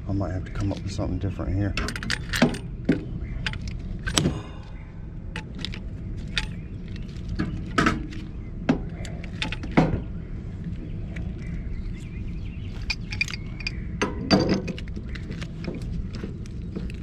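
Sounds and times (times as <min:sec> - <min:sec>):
steady low rumble: 0:00.0 - 0:17.0
steel pipes clanking together: 0:01.8 - 0:04.4, 0:12.7 - 0:17.0.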